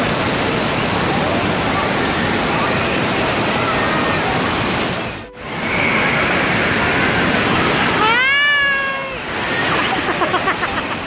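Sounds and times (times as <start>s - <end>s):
crowd noise: 0.0s - 11.0s
rushing splashing water: 0.0s - 11.0s
child squealing: 8.0s - 9.2s.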